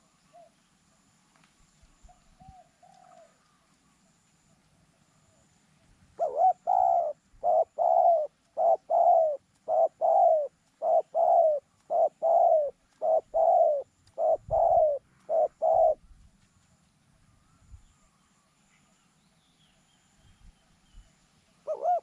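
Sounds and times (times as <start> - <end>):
dove cooing: 6.2 - 16.0, 21.6 - 22.0.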